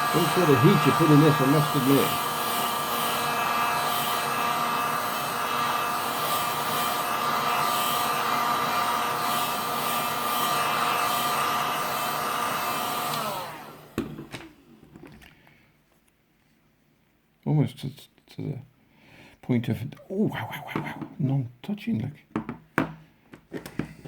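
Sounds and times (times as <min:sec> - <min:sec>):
heat gun fan whine: 0:00.0 - 0:14.5.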